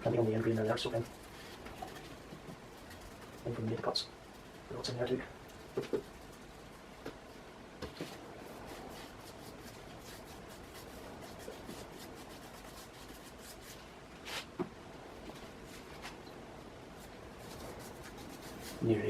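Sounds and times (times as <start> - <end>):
brush scratching on rough timber: 0.0 - 3.6, 8.0 - 14.5, 17.0 - 19.0.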